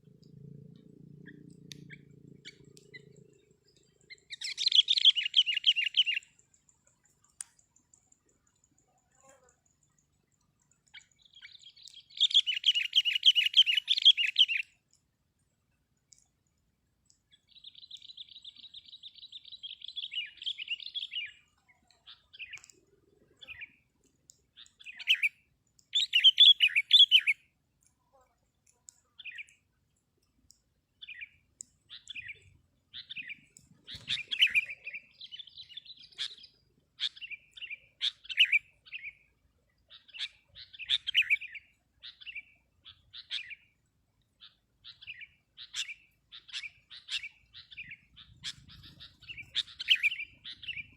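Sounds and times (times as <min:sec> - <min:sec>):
bulbuls trilling and chirping: 0:00.0 - 0:06.2, 0:09.9 - 0:14.6, 0:31.0 - 0:39.2, 0:44.4 - 0:50.9.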